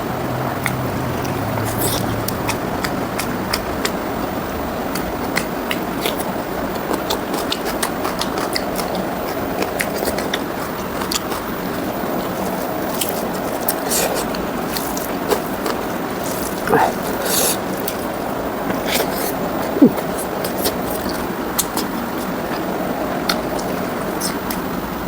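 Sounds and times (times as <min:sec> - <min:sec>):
steady background noise: 0:00.0 - 0:25.0
wet chewing and lip-smacking: 0:00.3 - 0:24.8
voiced mouth sound: 0:04.9 - 0:24.7.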